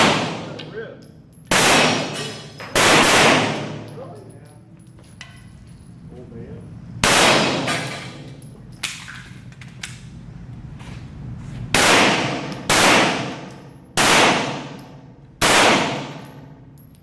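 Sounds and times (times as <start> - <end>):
pistol shots echoing: 0.0 - 0.6, 1.5 - 3.9, 7.0 - 8.2, 11.8 - 16.4
bullets clanging on steel targets: 0.0 - 6.0, 7.5 - 9.4, 15.9 - 17.0.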